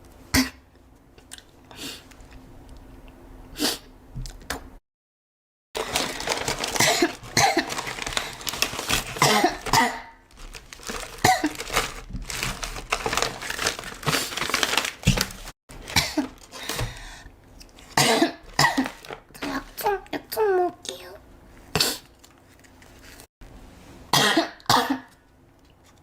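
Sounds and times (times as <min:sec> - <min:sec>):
woman coughing: 0:06.8 - 0:07.8, 0:09.2 - 0:10.2, 0:11.2 - 0:11.6, 0:15.9 - 0:16.4, 0:18.0 - 0:19.0, 0:24.2 - 0:25.1.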